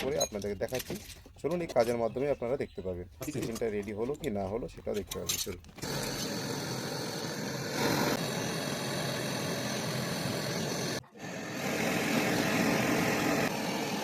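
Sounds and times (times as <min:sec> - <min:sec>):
electric motor humming: 0:05.8 - 0:14.0.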